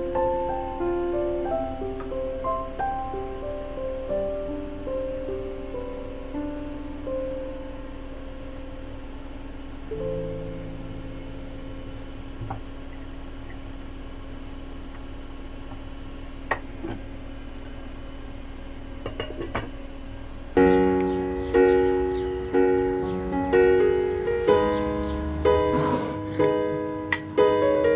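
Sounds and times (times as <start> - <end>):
piano and ukulele music: 0.0 - 9.2, 10.0 - 12.4, 20.7 - 27.9
dishes and utensils clinking: 19.1 - 19.8.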